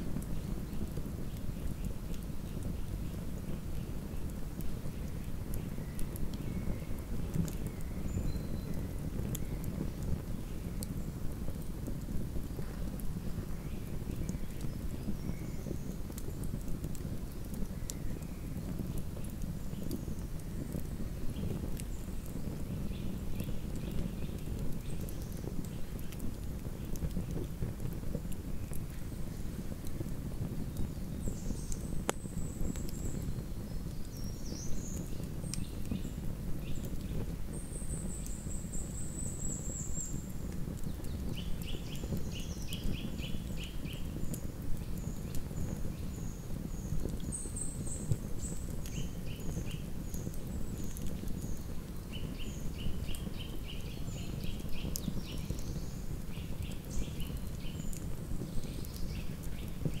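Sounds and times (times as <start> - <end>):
campfire crackling and popping: 0.0 - 60.0
small birds calling and trilling: 0.2 - 12.2, 13.2 - 29.7, 30.4 - 60.0.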